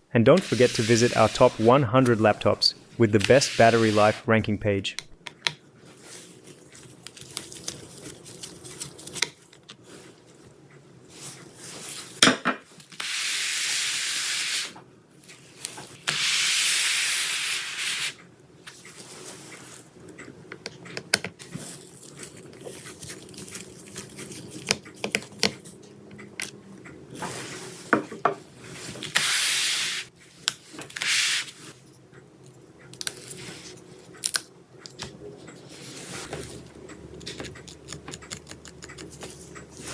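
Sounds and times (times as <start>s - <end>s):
compressed air duster hissing: 0.4s - 2.4s, 3.0s - 4.3s, 29.2s - 30.1s.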